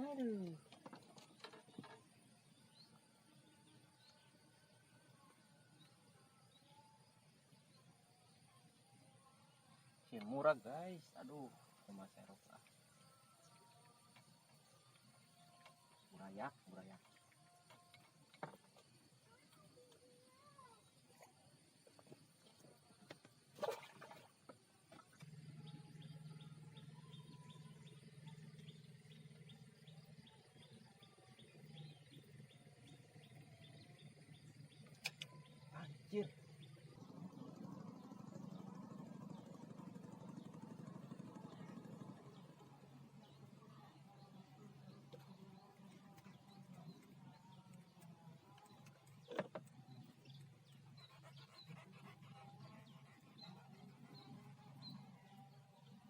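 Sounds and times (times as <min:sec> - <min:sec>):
low steady hum: 0:21.2 - 0:56.0
small birds chirping: 0:24.5 - 0:56.0.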